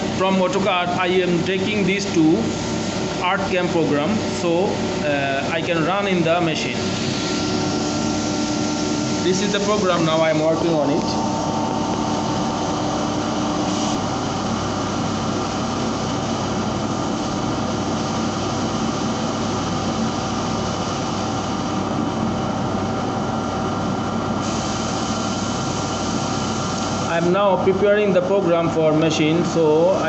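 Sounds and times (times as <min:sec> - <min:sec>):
machinery drone: 0:00.0 - 0:19.5.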